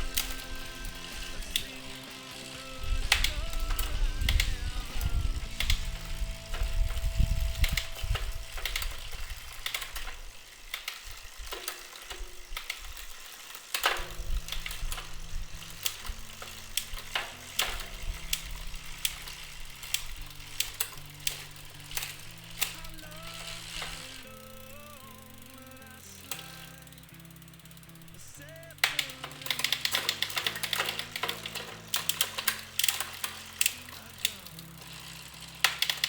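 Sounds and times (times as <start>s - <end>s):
background music: 0.0s - 9.5s, 14.4s - 36.0s
heavy rumble: 0.0s - 10.1s
bike chain and hub ratcheting: 0.0s - 36.0s
derailleur shifting clicks: 0.0s - 36.0s.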